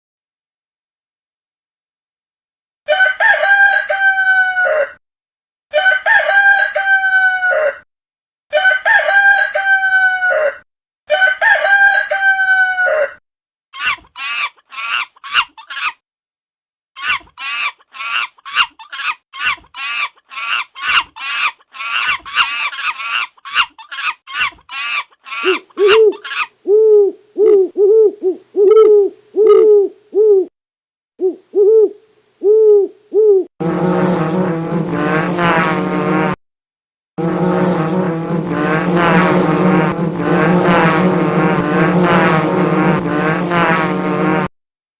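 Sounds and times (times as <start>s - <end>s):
rooster crowing: 2.9s - 5.0s, 5.7s - 7.8s, 8.5s - 13.2s
low-pitched rapid call: 32.6s - 36.4s, 37.2s - 44.5s.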